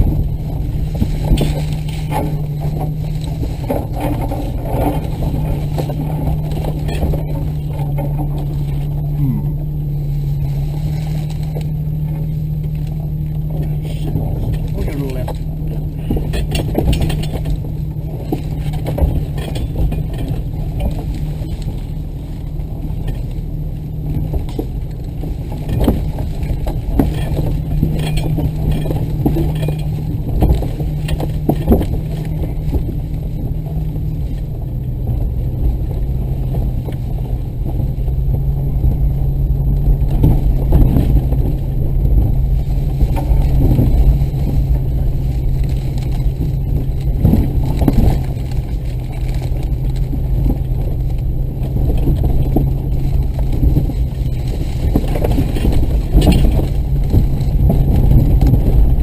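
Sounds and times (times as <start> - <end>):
body and suspension rattles: 0.0 - 59.0
off-road vehicle engine running: 0.0 - 59.0.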